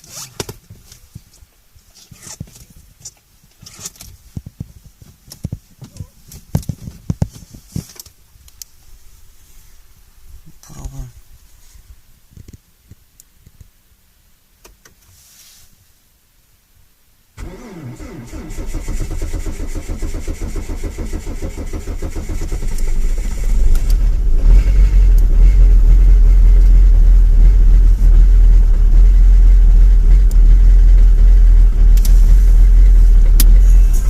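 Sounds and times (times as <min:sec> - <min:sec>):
starter motor cranking: 0:17.4 - 0:26.8
diesel engine running loudly: 0:21.9 - 0:34.0.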